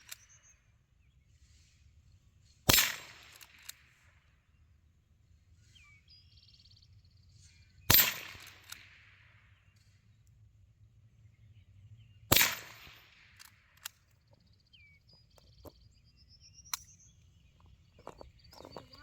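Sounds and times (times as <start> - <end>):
rifle shot: 2.7 - 3.8, 7.9 - 9.0, 12.3 - 13.6.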